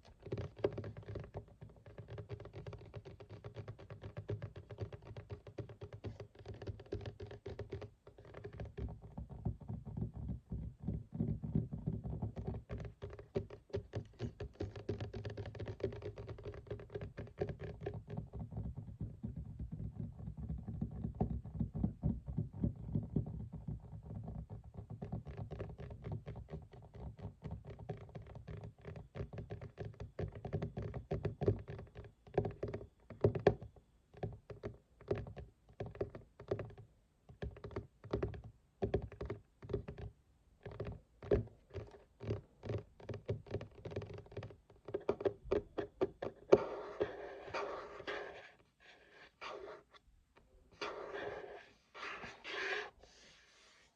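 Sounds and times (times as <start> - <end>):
fingernails tapping and scratching desk: 40.6 - 50.0, 50.7 - 53.9.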